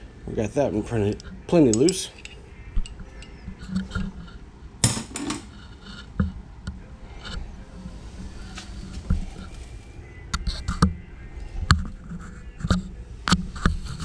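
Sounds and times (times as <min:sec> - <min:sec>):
metal tools clinking: 0:01.6 - 0:03.4.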